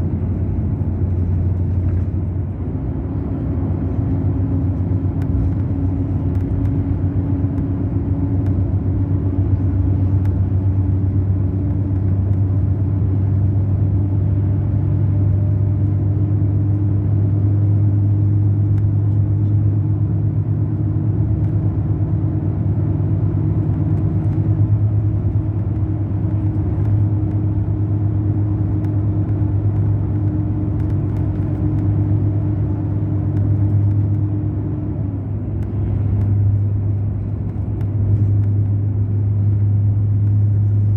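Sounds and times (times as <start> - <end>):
bus diesel engine droning: 0.0 - 40.9.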